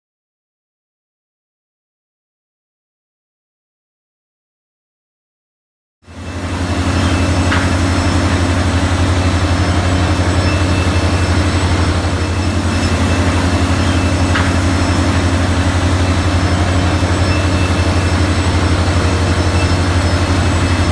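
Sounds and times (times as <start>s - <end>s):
woodworking power tool running: 6.1s - 20.9s.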